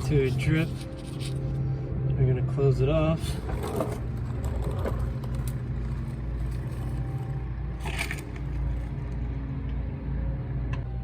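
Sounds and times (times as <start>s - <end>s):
metal rattling scrape: 0.0s - 1.7s, 3.2s - 9.2s
steady low hum: 0.0s - 11.0s.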